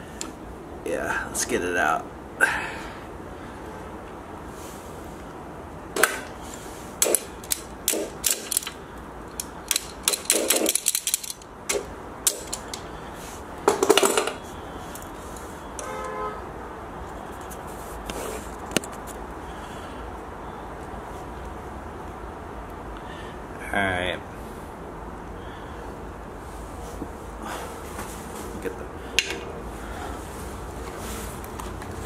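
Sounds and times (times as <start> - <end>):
metal clinks and knocks: 7.0 - 12.8, 13.7 - 14.4
metal rattle: 7.0 - 12.8.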